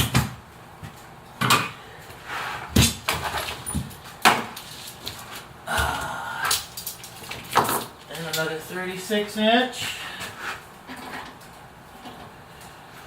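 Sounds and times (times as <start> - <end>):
rustling and light clatter: 0.8 - 5.5, 9.8 - 13.0.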